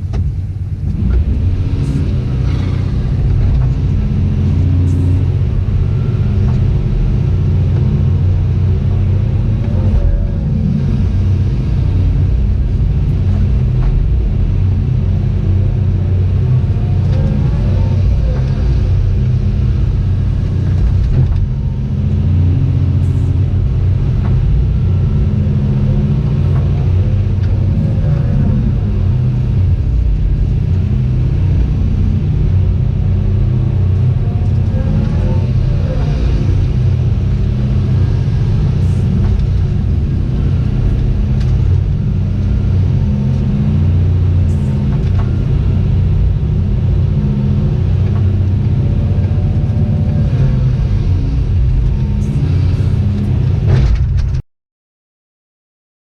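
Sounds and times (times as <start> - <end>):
excavator diesel engine running: 0.0 - 54.4
machine whine: 0.0 - 54.4.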